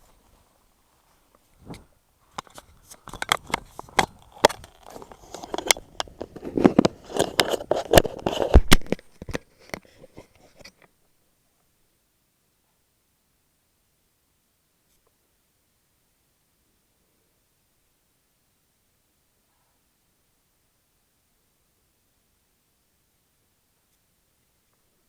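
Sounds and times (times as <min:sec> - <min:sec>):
scraping and rubbing noise: 0:01.0 - 0:10.8
sharp clicks and knocks: 0:02.4 - 0:10.9.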